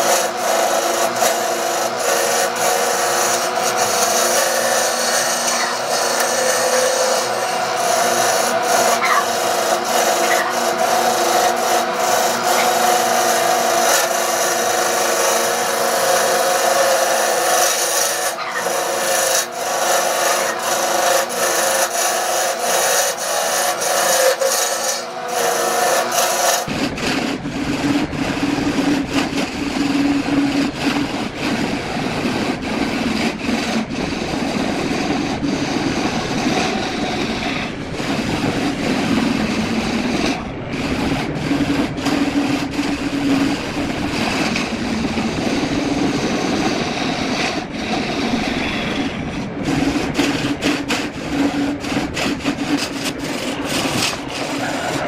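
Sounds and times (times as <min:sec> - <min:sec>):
lathe motor hum: 0:00.0 - 0:55.0
wood lathe scraping hiss: 0:00.0 - 0:55.0.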